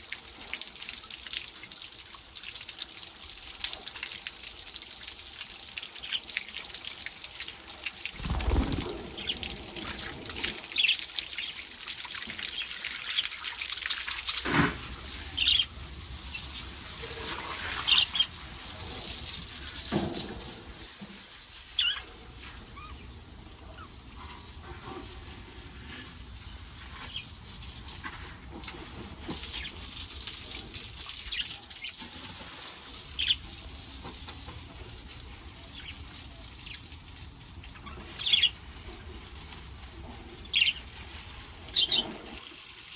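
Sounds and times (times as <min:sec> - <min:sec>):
parrots chirping: 0:08.2 - 0:11.6.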